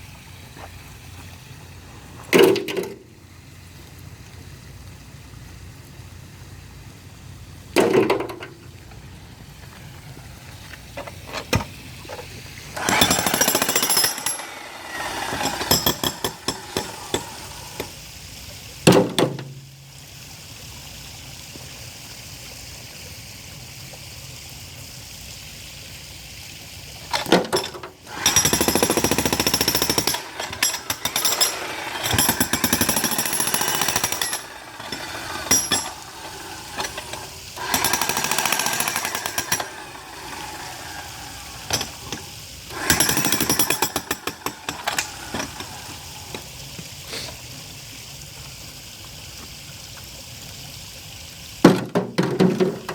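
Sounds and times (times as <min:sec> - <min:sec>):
jackhammer breaking concrete: 0:12.8 - 0:17.9, 0:27.5 - 0:36.1, 0:36.7 - 0:40.8, 0:42.7 - 0:45.7.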